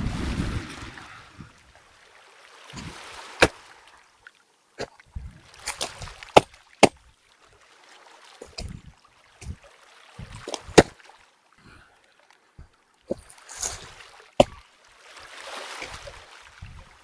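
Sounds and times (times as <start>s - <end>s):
wind rumble on microphone: 0.0s - 1.7s, 2.7s - 3.0s, 5.1s - 6.2s, 8.4s - 9.6s, 10.2s - 10.9s, 15.8s - 17.0s.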